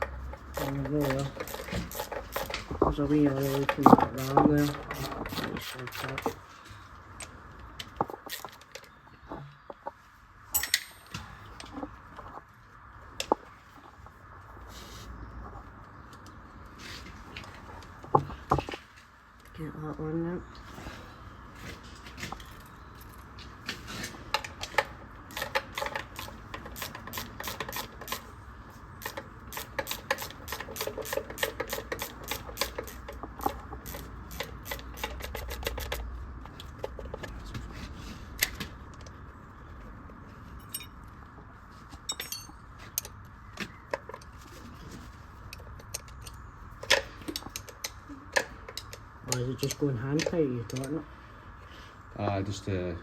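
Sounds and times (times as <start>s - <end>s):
socket ratchet clicking: 25.3s - 28.3s, 29.0s - 36.0s.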